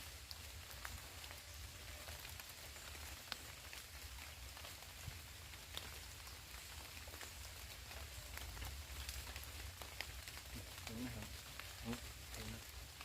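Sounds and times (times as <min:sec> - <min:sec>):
rainforest background hiss: 0:00.0 - 0:13.0.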